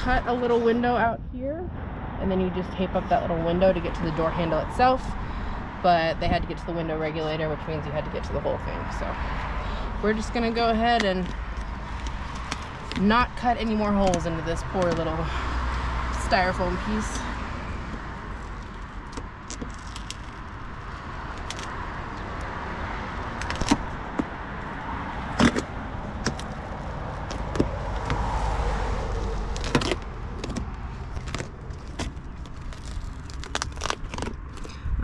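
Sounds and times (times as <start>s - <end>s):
styrofoam crackling and snapping: 11.2s - 13.1s, 18.4s - 22.3s, 23.2s - 24.3s, 29.0s - 34.7s.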